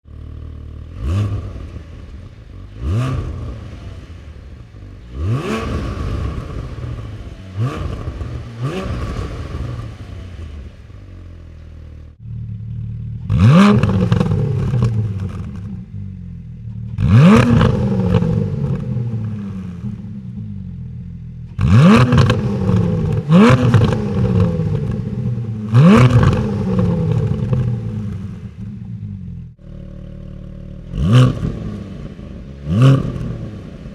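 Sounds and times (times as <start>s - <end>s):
car engine idling and revving: 0.0s - 33.9s.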